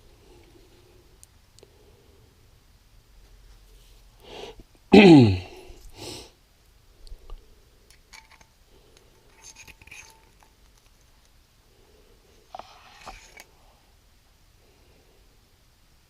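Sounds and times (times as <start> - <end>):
person sniffing: 4.2 - 6.4
person sneezing: 4.9 - 6.3.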